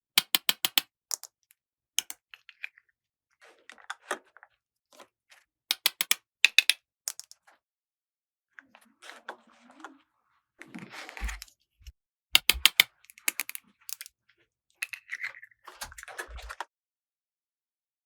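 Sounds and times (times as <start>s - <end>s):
plastic toy pieces clicking: 0.2s - 1.3s, 2.0s - 2.2s, 5.7s - 7.4s, 12.4s - 14.1s.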